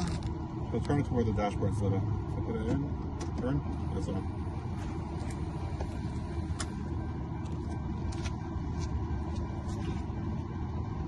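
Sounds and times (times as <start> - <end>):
steady low rumble: 0.0 - 11.0.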